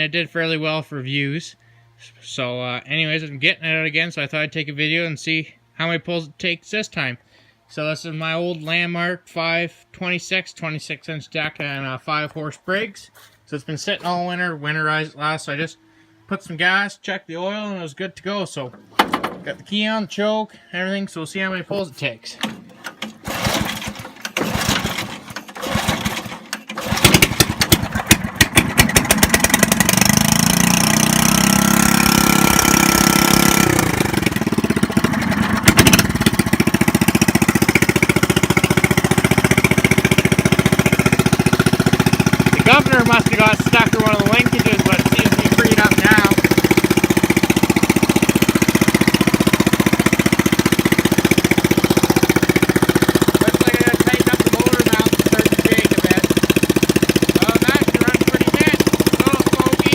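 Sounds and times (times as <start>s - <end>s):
recoil starter pulls: 22.3s - 59.9s
mower engine running: 22.6s - 59.9s.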